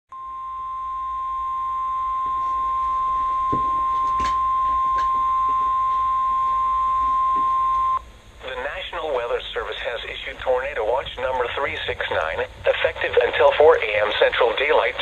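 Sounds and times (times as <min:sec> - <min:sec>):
steady alarm tone: 0:00.2 - 0:08.2
faint static crackles: 0:00.2 - 0:15.0.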